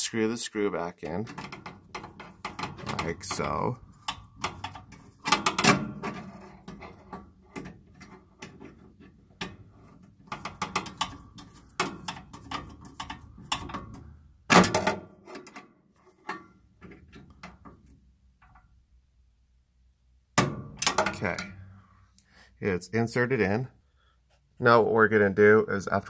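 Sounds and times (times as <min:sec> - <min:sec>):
screwdriver clicks and metal scrapes: 0:01.1 - 0:14.1
metal knocks: 0:01.2 - 0:15.1, 0:20.4 - 0:21.6.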